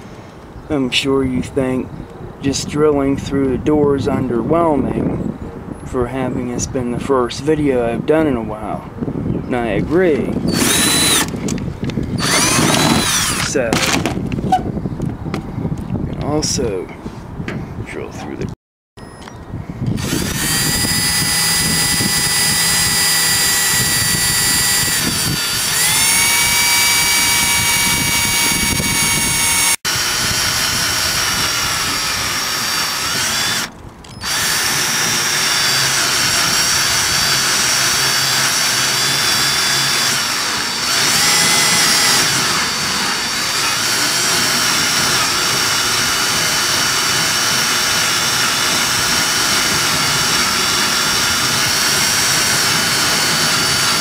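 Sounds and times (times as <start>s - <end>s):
power drill boring into metal: 10.5s - 11.4s, 12.2s - 14.1s, 20.0s - 54.0s.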